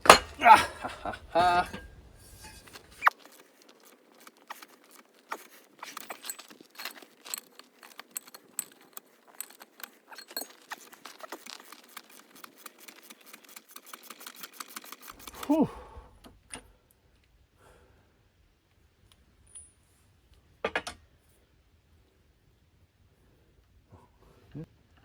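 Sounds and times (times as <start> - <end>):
hand tools clicking on metal: 1.6 - 15.5.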